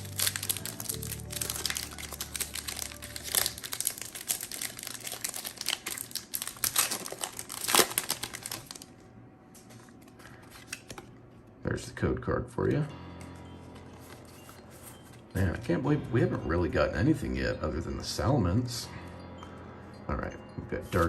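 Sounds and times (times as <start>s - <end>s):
foil wrapper crinkling: 0.0s - 9.0s.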